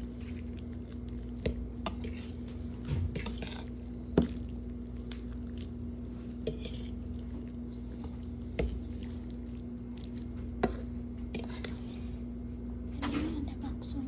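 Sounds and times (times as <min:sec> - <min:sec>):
steady low hum: 0:00.0 - 0:14.0
utensils clinking against a bowl: 0:06.4 - 0:09.2, 0:10.0 - 0:11.9.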